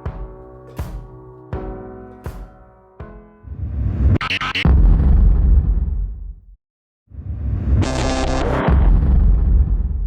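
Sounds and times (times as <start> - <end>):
deep rumbling boom: 8.7 - 10.0.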